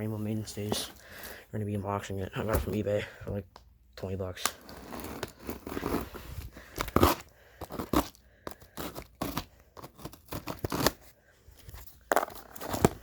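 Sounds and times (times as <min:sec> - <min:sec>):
cardboard tearing and crunching: 0:04.4 - 0:11.1, 0:12.1 - 0:13.0.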